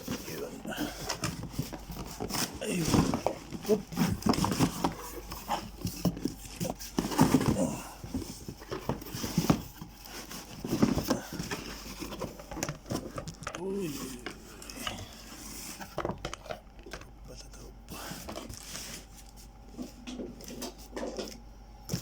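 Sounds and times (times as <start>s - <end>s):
cardboard box rustling and scraping: 0.0s - 16.6s, 18.0s - 21.1s
person exclaiming: 13.6s - 14.4s.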